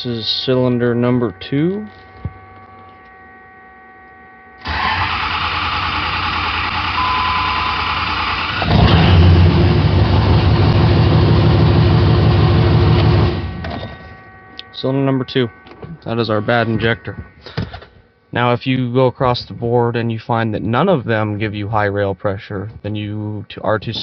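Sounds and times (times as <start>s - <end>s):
starter motor cranking: 4.6s - 9.0s
diesel engine running: 4.6s - 13.7s.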